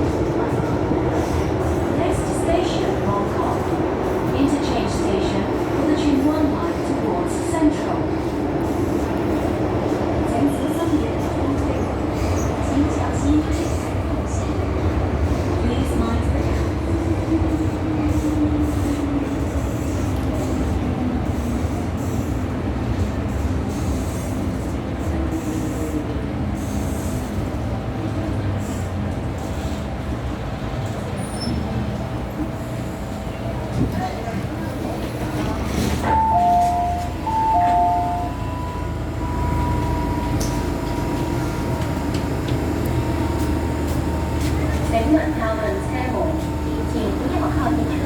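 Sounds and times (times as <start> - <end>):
train wheels rumbling on track: 0.0 - 48.0
train motor whine: 36.5 - 48.0.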